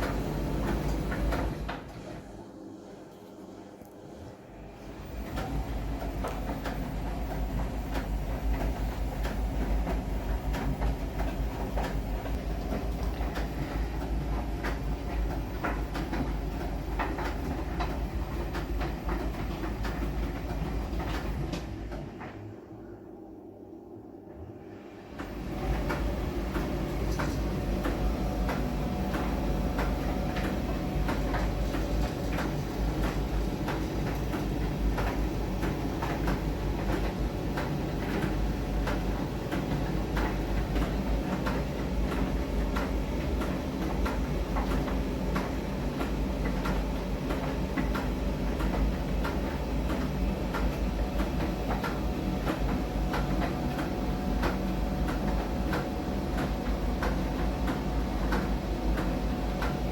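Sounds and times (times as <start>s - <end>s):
tumble dryer motor hum: 0.0s - 59.9s.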